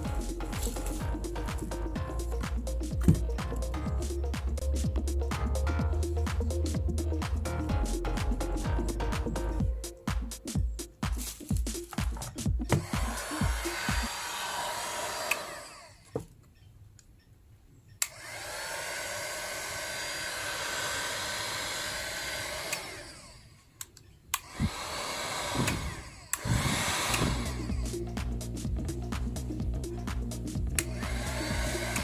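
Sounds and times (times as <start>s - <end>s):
heat gun blowing: 12.7s - 16.1s, 18.0s - 23.5s, 24.4s - 27.8s.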